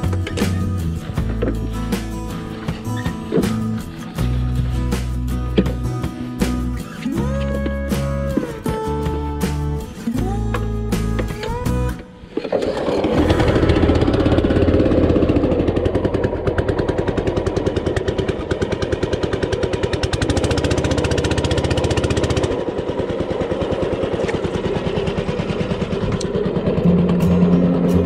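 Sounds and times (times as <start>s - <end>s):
small engine running: 12.5s - 28.0s.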